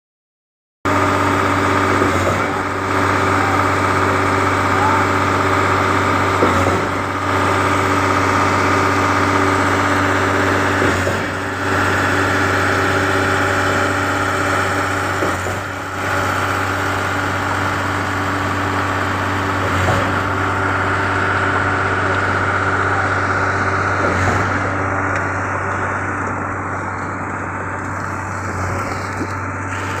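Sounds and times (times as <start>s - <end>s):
diesel engine running under load: 0.9s - 30.0s.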